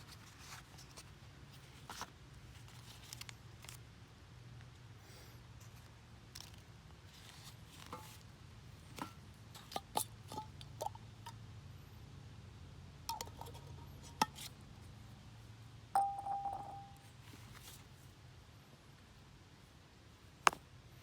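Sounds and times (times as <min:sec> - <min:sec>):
metal cookware clinking: 0:16.0 - 0:17.0.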